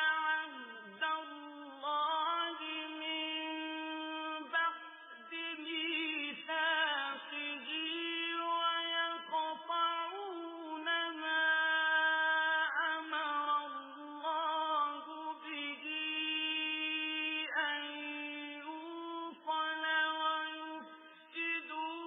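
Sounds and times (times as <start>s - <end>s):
man reciting melodically: 0.0s - 22.0s
breaths between phrases: 20.9s - 21.3s.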